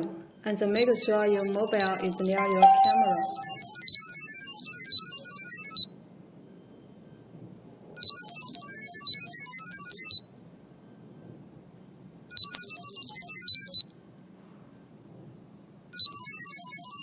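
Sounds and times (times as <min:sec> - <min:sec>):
high-pitched beeping tones: 0:00.0 - 0:06.0.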